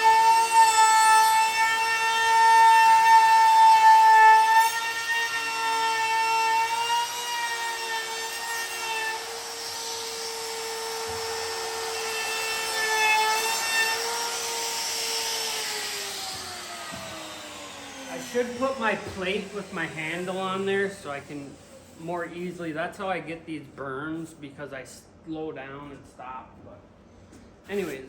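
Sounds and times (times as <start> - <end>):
router cutting wood: 0.0 - 21.9
wood router whining: 0.0 - 22.0.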